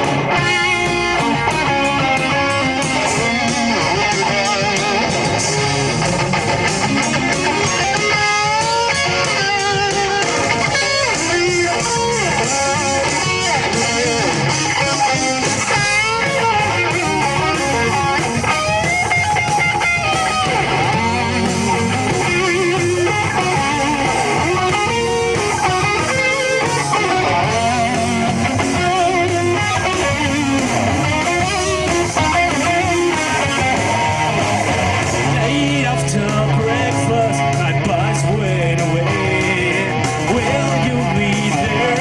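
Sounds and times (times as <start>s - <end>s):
electric guitar: 0.0s - 42.0s
rock band playing live: 0.0s - 42.0s.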